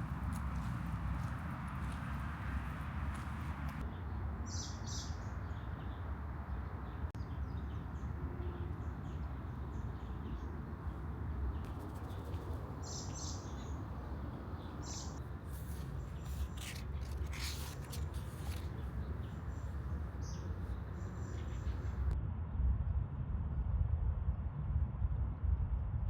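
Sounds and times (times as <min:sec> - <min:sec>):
low outdoor rumble: 0:00.0 - 0:03.8
small birds chirping: 0:00.0 - 0:06.0, 0:11.5 - 0:22.2.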